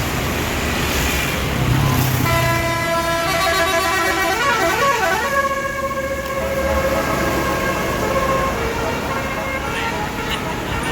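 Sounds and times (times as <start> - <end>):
musical bus horn playing a tune: 2.2 - 10.9.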